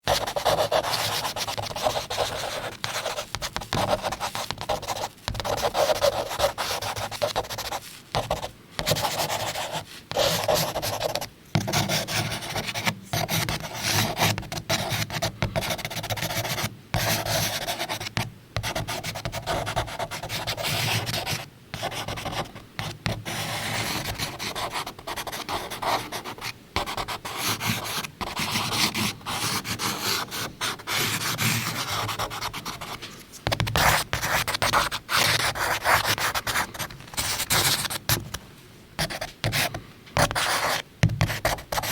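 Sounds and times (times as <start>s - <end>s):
charcoal scratching on paper: 0.1s - 15.1s.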